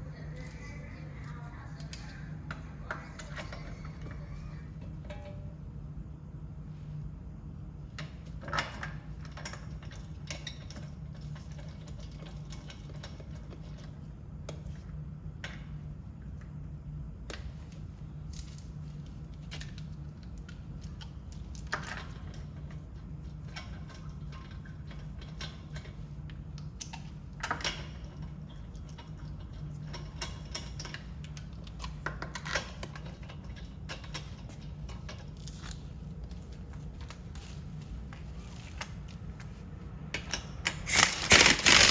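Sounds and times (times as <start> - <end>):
low steady hum: 0.0 - 41.9
metal tools clinking: 40.2 - 41.9.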